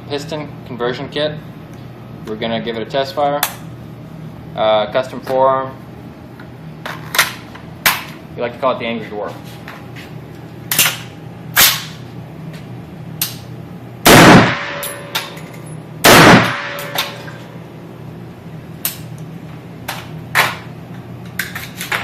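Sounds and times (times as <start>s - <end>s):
rifle gunshots: 14.1s - 14.8s, 16.0s - 17.0s.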